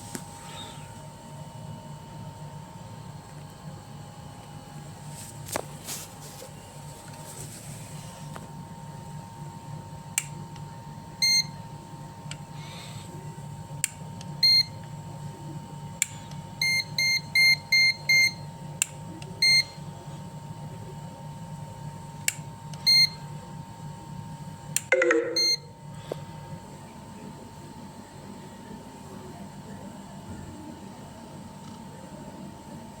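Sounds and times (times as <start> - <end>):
steady low hum: 0.0 - 33.0
short electronic beeps: 24.9 - 25.7.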